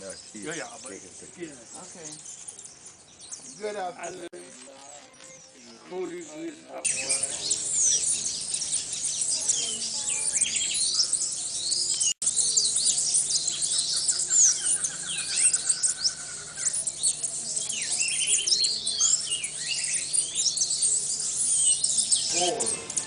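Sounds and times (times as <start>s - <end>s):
hummingbirds squeaking and chittering: 0.0s - 23.0s
bird rapid repeated notes: 21.1s - 23.0s.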